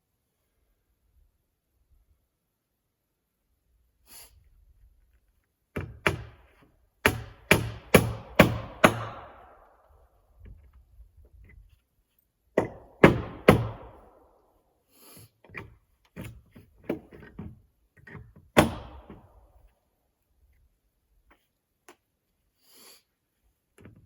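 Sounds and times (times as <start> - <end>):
hammer driving nails into wood: 5.7 - 9.6, 12.6 - 14.2, 15.5 - 19.4.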